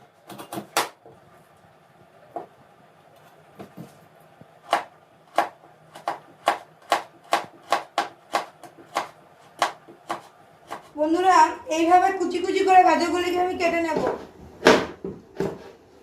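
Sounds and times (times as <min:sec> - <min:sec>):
knife chopping on cutting board: 0:04.7 - 0:10.9.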